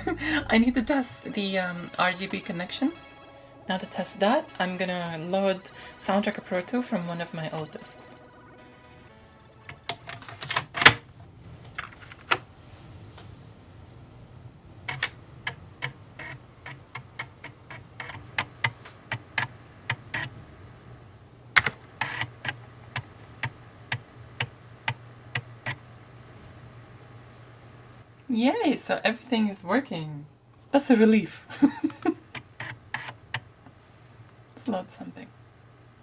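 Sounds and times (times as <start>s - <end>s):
drive motor hum: 0.0s - 1.1s.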